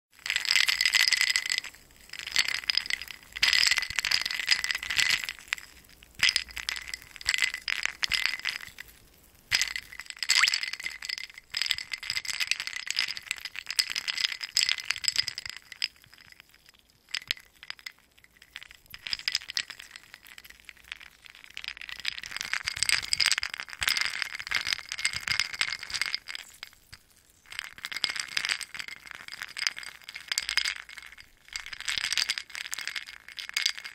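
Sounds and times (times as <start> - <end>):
ice cubes clinking in glass: 0.2 - 8.9, 9.5 - 16.3, 21.8 - 26.6, 27.5 - 33.9.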